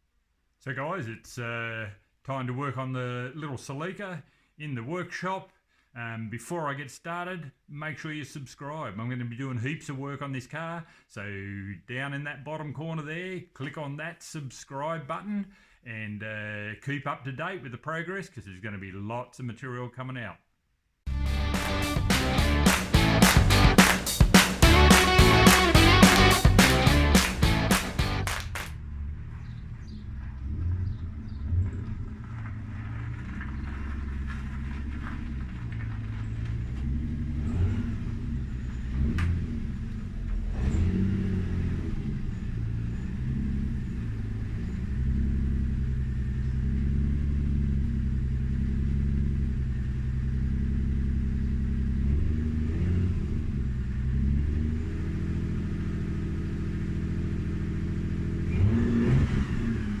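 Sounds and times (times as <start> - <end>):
car engine revving: 21.1 - 45.2, 57.1 - 60.0.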